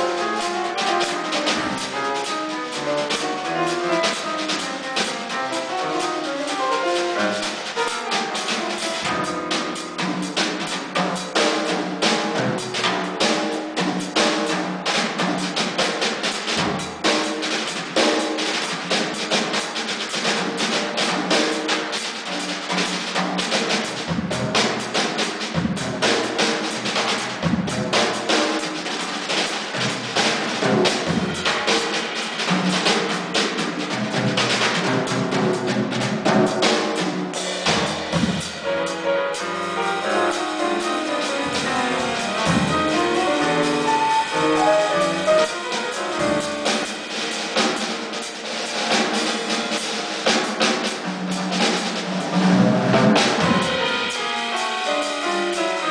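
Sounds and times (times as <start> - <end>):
drum kit playing jazz: 0.0 - 55.9
quick runs of pitched notes: 38.8 - 47.0.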